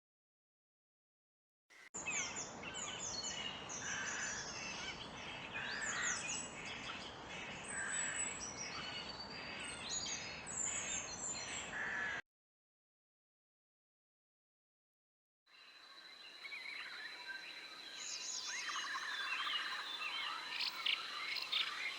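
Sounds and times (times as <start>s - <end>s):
birds chirping and calling: 2.0s - 12.2s, 16.3s - 21.9s
outdoor background hiss: 15.6s - 21.9s.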